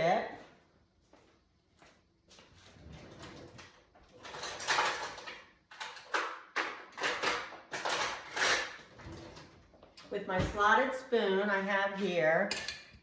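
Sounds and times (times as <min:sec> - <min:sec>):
utensils scraping and rattling: 0:02.9 - 0:09.6.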